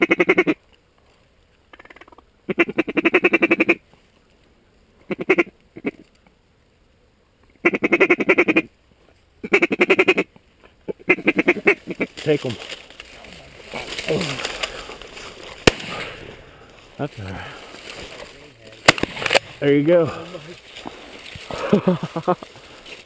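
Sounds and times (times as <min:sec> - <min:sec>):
duck call quacking: 0:00.0 - 0:00.6, 0:01.8 - 0:03.8, 0:05.1 - 0:06.0, 0:07.6 - 0:08.7, 0:09.4 - 0:10.3, 0:10.9 - 0:12.1.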